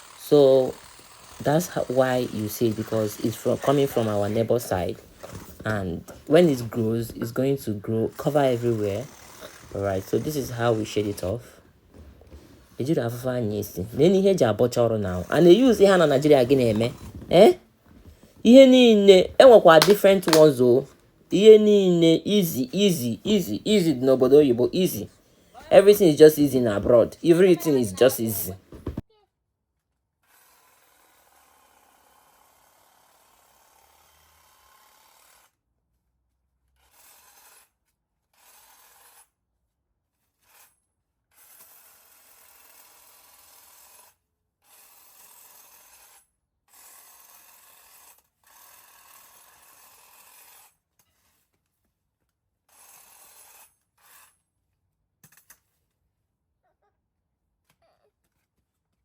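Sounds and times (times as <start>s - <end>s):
electric garden trimmer running: 0.0s - 5.5s, 6.2s - 11.3s, 14.0s - 17.4s.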